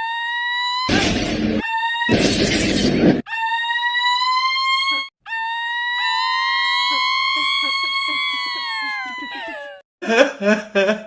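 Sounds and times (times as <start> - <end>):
loud crashing noise: 0.9 - 3.2.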